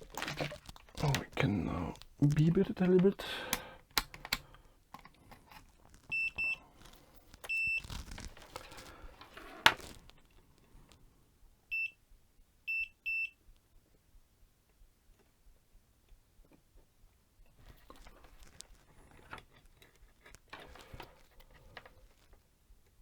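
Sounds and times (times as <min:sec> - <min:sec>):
probe handling clicks: 0:02.9 - 0:04.6.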